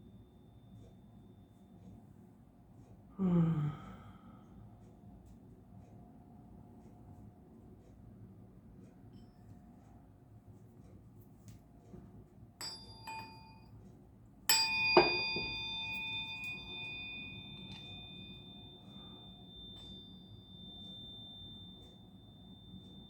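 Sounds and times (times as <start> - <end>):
tuning fork struck and ringing: 12.6 - 13.8, 14.5 - 23.0.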